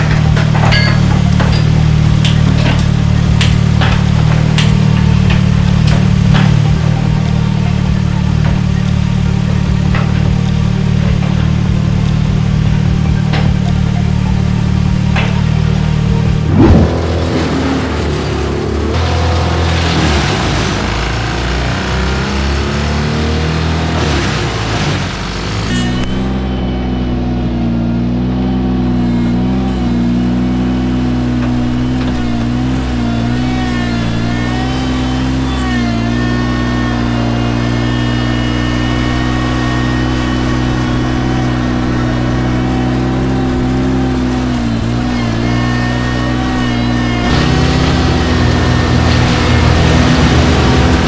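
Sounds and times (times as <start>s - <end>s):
tractor engine at high throttle: 0.0s - 51.0s.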